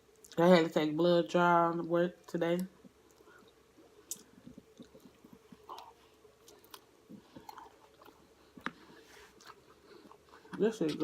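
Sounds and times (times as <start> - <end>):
person chewing food: 2.8 - 11.0.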